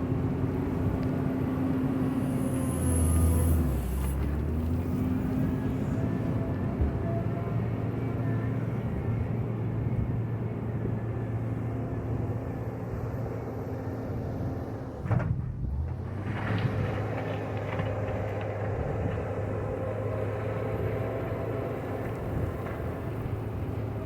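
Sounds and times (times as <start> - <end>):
diesel engine running: 15.7 - 24.0.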